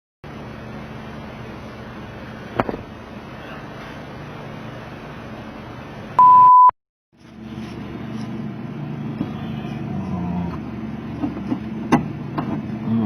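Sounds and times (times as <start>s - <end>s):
pure beep tone: 6.2s - 6.8s.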